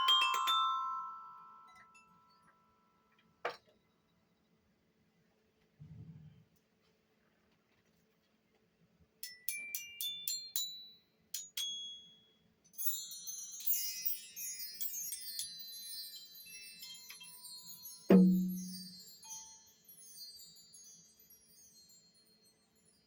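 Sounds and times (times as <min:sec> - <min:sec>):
high metallic bell notes: 0:13.8 - 0:19.8.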